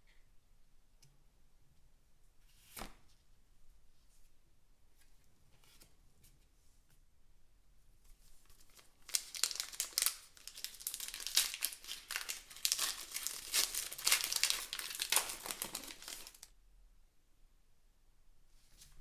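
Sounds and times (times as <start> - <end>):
packaging crinkling: 8.5 - 16.5.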